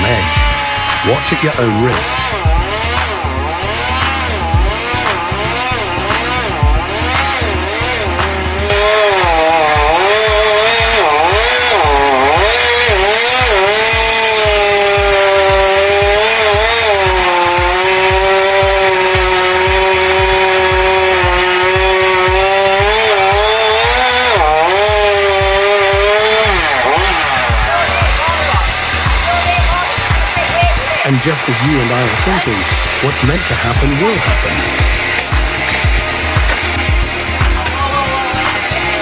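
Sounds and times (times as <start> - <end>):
background music with steady beat: 0.0 - 39.0
chainsaw cutting: 0.0 - 39.0.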